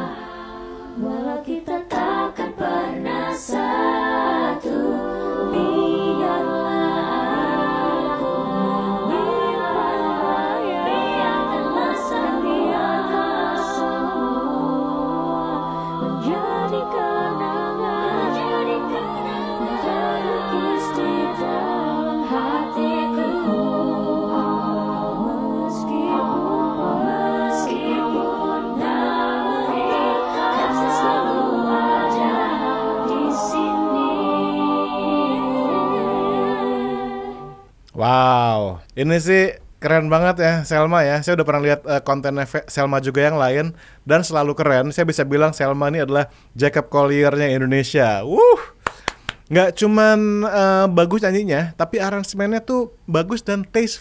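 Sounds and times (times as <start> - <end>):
lead voice singing: 0.0 - 37.6
voices holding a sustained chord: 0.0 - 37.7
a cappella vocal harmonies: 0.0 - 54.0.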